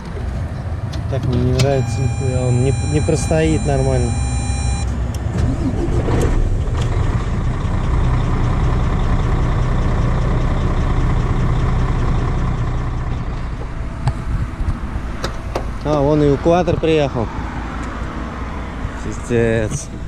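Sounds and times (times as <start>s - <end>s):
diesel truck engine idling: 0.4s - 5.3s, 7.2s - 16.2s.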